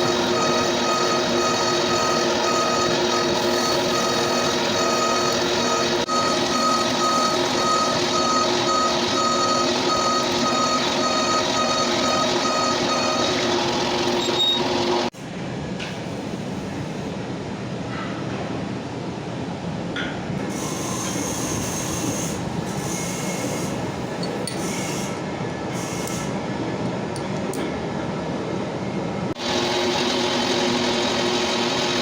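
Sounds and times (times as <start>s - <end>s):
lathe running with pulsing tone: 0.0s - 15.1s, 29.4s - 32.0s.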